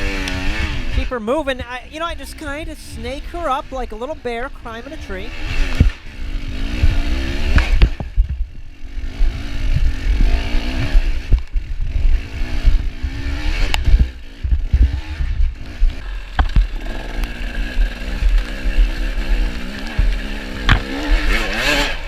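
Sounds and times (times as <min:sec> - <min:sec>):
dirt bike engine revving: 0:00.0 - 0:22.0
bike knocking over rough ground: 0:13.9 - 0:21.4.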